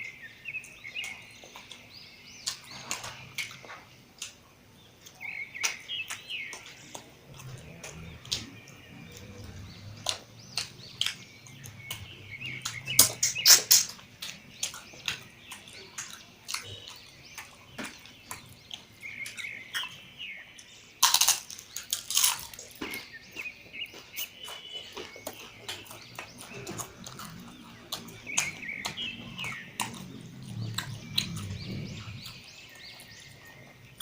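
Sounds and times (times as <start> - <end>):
wet chewing and lip-smacking: 0.5 - 34.0.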